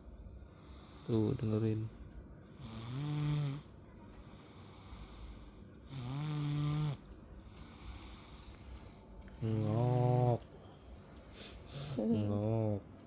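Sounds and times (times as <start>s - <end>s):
child snoring: 2.5s - 3.7s, 4.6s - 7.0s, 9.4s - 10.4s.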